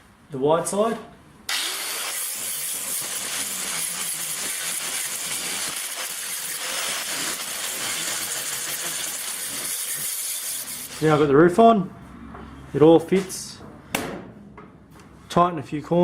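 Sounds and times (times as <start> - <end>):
power tool grinding sheet metal: 1.5 - 11.2.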